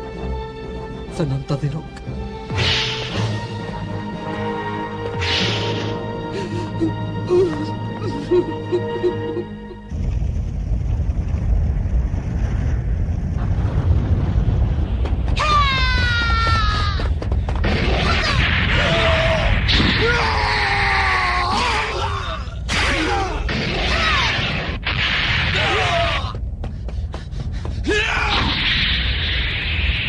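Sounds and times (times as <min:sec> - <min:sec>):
deep continuous rumble: 0:09.7 - 0:28.5.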